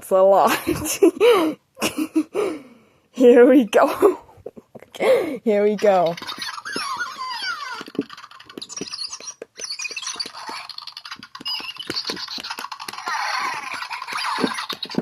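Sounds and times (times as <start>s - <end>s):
toy hamster squeaking: 5.6s - 15.0s.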